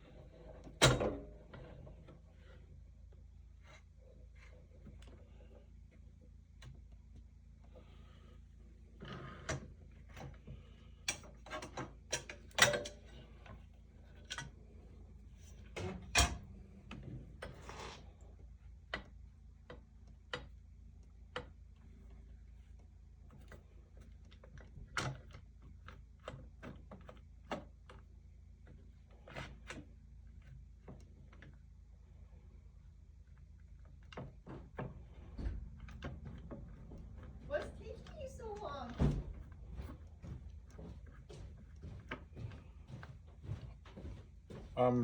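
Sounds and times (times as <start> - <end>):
tools and metal parts clanking: 11.1 - 14.5.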